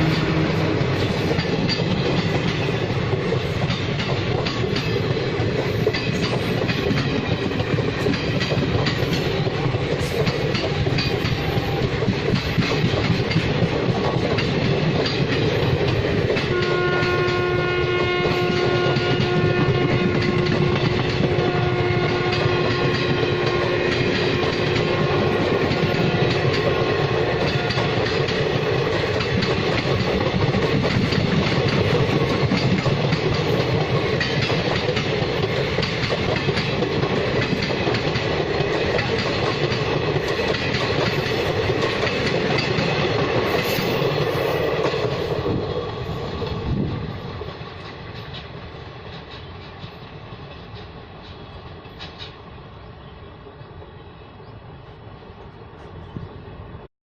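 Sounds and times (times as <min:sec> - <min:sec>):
locomotive horn: 0:00.0 - 0:01.2, 0:16.5 - 0:28.1
train wheels clickety-clack: 0:00.0 - 0:56.6.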